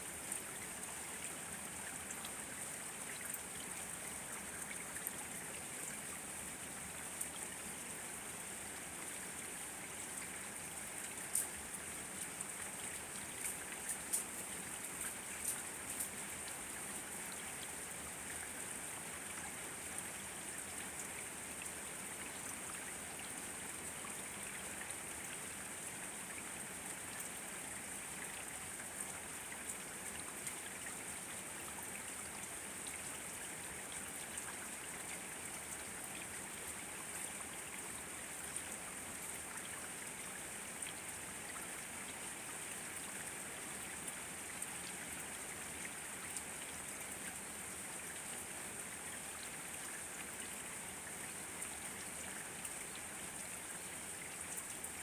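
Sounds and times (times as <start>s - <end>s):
steady rain falling: 0.0s - 55.0s
rain drop ticks: 11.3s - 11.5s.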